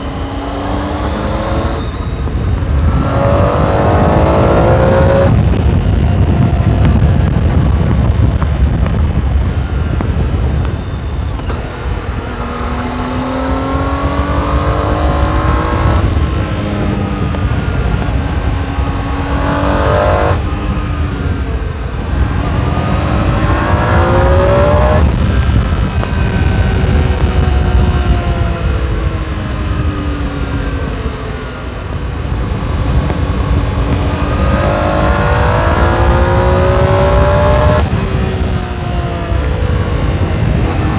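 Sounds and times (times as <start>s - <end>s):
motorcycle engine accelerating: 0.0s - 40.9s
wind noise on microphone: 0.0s - 40.9s.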